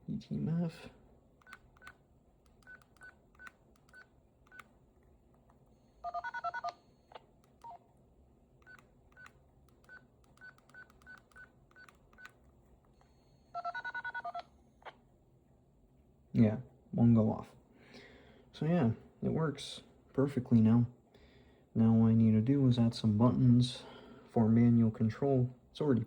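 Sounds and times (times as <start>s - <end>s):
keypad beeps: 9.9s - 12.3s.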